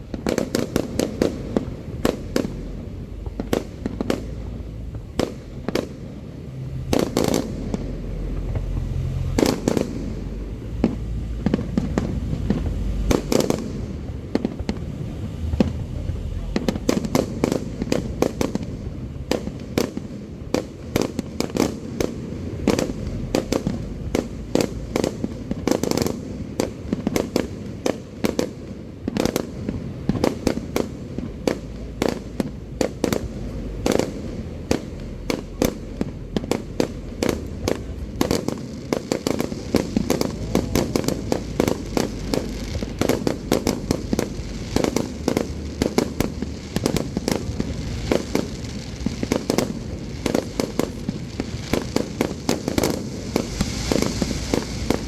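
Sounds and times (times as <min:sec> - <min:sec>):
fireworks bangs and crackling: 0:00.0 - 0:55.0.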